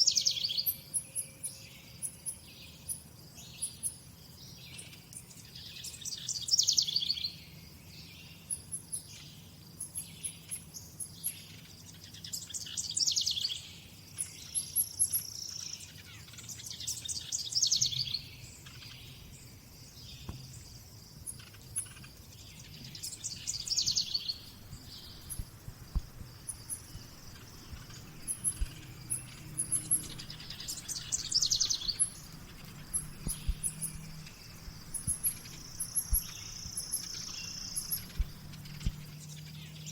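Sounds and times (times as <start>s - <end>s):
songbird trilling: 0.0s - 7.4s, 8.0s - 20.6s, 21.2s - 39.9s
faint low hum: 0.2s - 39.9s
faint high chirps: 8.4s - 39.9s.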